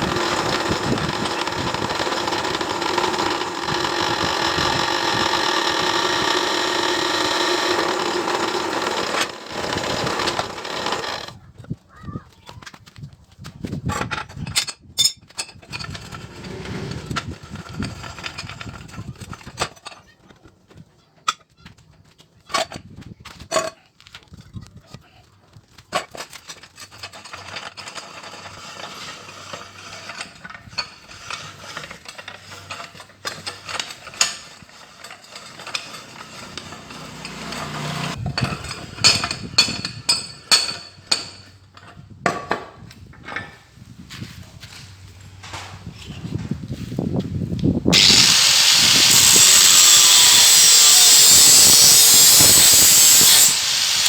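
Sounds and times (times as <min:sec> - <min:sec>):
steady metal scraping: 0:15.7 - 0:19.0, 0:26.6 - 0:41.5, 0:47.9 - 0:54.0.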